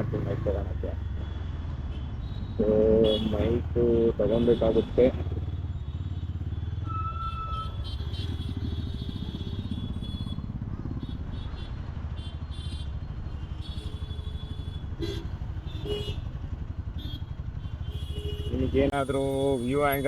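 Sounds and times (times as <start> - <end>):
motorcycle engine running: 0.0 - 6.9, 7.6 - 18.6.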